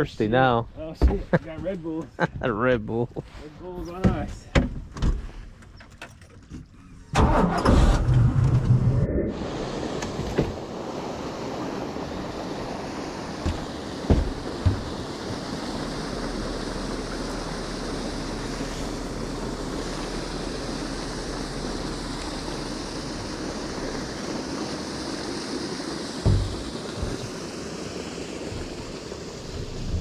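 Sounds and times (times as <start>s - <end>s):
water along hull: 0.7s - 30.0s
low motor hum: 12.2s - 27.6s, 28.3s - 30.0s
low thump: 13.4s - 15.0s, 26.2s - 27.3s
wind on microphone: 28.5s - 30.0s.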